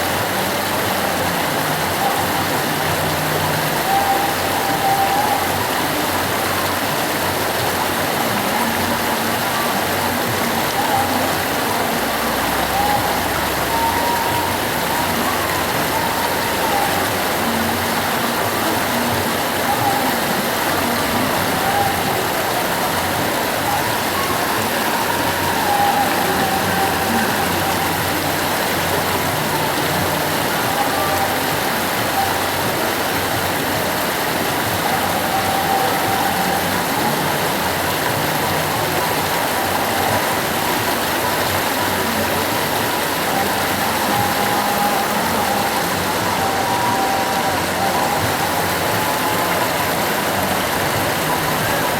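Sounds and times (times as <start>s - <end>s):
river rushing: 0.0s - 51.9s
faint wavering tone: 1.1s - 33.8s.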